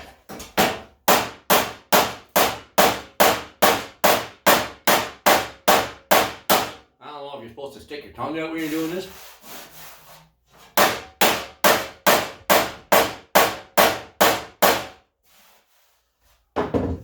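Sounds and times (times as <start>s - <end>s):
hammer striking metal: 0.6s - 6.8s, 10.8s - 14.9s.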